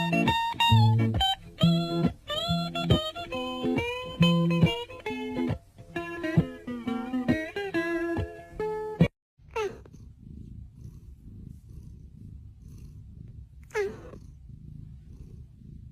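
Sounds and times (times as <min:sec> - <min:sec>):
background guitar music: 0:00.0 - 0:09.1
cat purring: 0:09.5 - 0:15.9.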